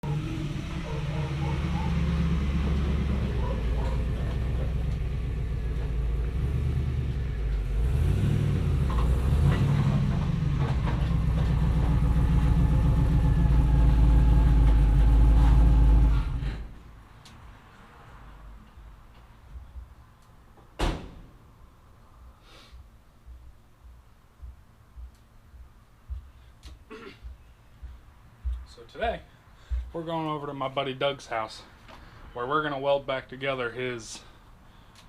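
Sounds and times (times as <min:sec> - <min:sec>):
vehicle engine running: 0:00.0 - 0:16.6.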